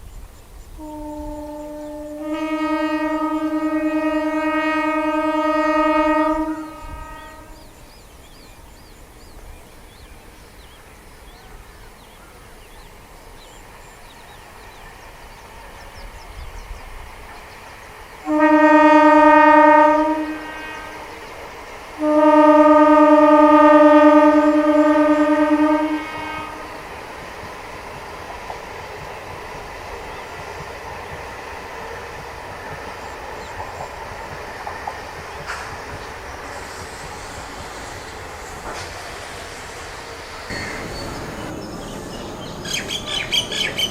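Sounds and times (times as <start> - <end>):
train running noise: 0.0 - 43.9
train horn blasts: 0.8 - 7.8, 18.2 - 21.4, 22.0 - 26.9.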